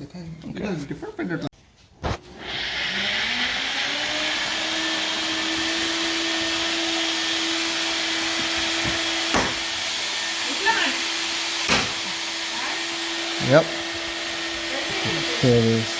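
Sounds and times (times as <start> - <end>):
electric fan spinning up: 2.0 - 15.9
sharp knock: 9.3 - 9.6, 11.7 - 12.0.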